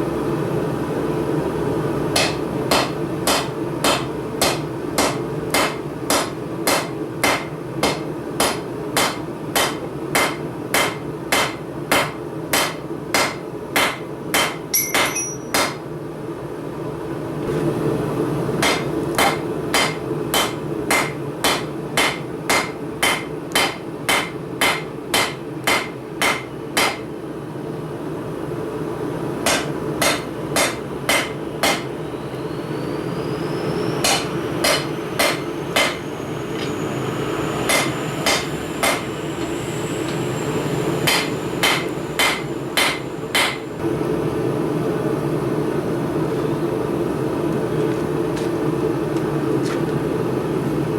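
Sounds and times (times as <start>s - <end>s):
hammer striking steel on anvil: 2.1s - 15.8s, 18.6s - 27.1s, 29.4s - 31.9s, 34.0s - 36.0s, 37.7s - 40.2s, 41.0s - 43.7s
low hum: 32.0s - 44.8s.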